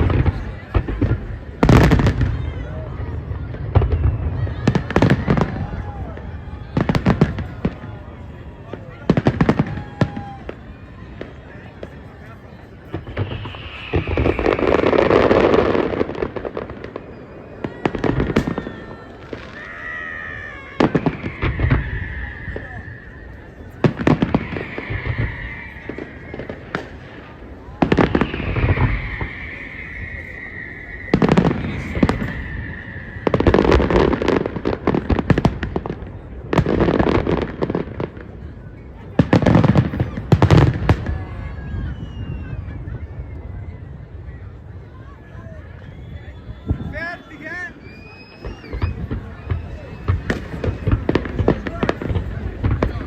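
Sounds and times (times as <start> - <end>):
firework whistle: 0.0 - 53.0
fireworks bangs and crackles: 0.0 - 53.0.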